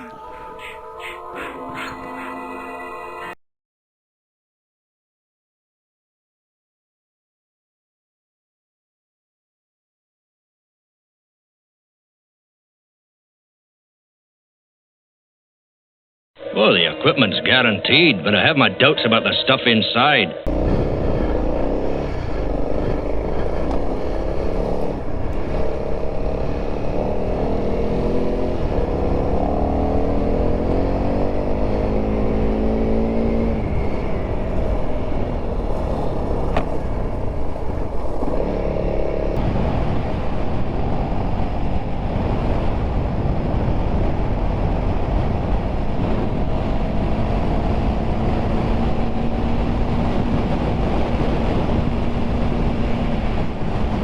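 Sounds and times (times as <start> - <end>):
motorcycle engine accelerating: 20.5 - 54.0
wind noise on microphone: 20.5 - 54.0.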